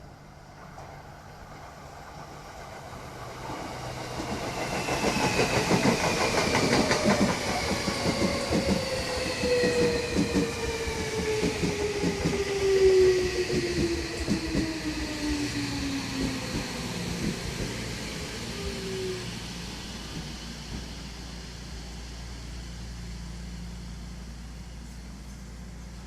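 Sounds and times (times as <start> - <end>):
train motors whining: 3.3 - 23.4.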